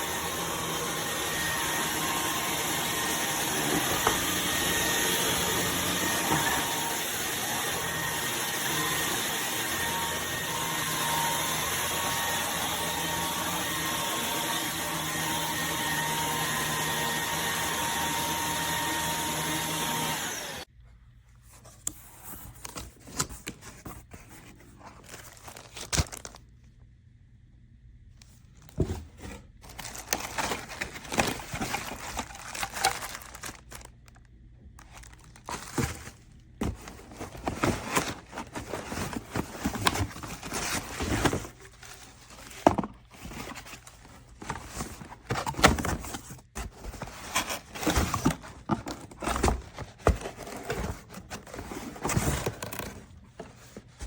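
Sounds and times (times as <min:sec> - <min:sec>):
stick vacuum whining: 0:00.0 - 0:20.7, 0:29.7 - 0:33.9
handling knocks and rustles: 0:28.2 - 0:33.9, 0:34.8 - 0:54.0.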